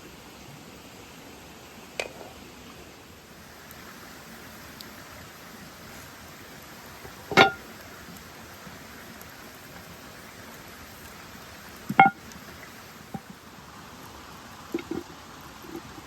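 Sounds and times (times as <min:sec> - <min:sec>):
rain hiss: 0:00.0 - 0:16.0
river water: 0:00.0 - 0:16.0
kitchenware clinking: 0:07.3 - 0:07.6.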